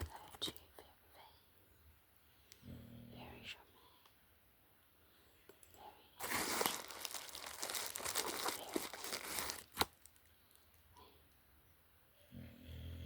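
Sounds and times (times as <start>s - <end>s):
packaging crinkled and torn: 6.2s - 10.8s.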